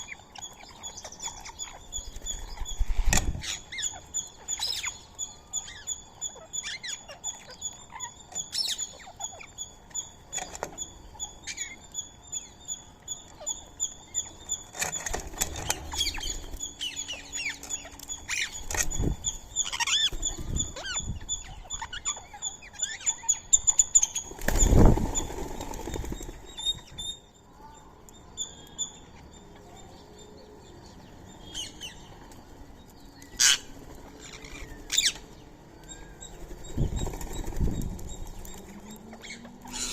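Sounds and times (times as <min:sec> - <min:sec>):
bird chirps and calls: 0:00.0 - 0:39.9
bird high chirp: 0:00.0 - 0:39.9
wings fluttering: 0:14.6 - 0:21.2, 0:23.8 - 0:27.0, 0:36.3 - 0:39.9.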